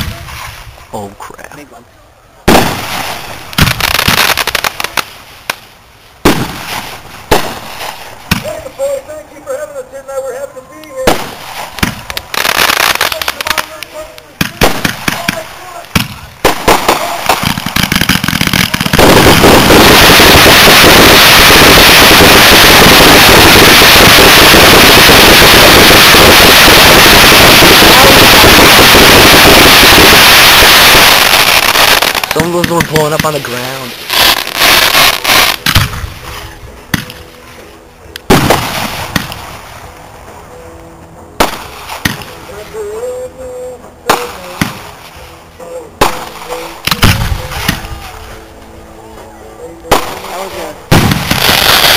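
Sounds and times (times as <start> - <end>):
firework booms: 2.4 - 5.6, 6.2 - 8.8, 11.0 - 37.2, 38.3 - 39.7, 46.0 - 48.1, 49.9 - 51.9
firework crackling: 2.4 - 37.3, 38.2 - 40.0, 41.4 - 43.5, 44.1 - 48.5, 49.9 - 51.9.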